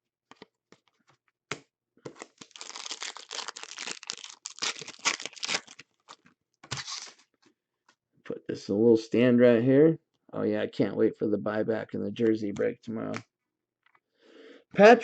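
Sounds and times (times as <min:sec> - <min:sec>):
crinkling plastic packaging: 0:02.2 - 0:07.1.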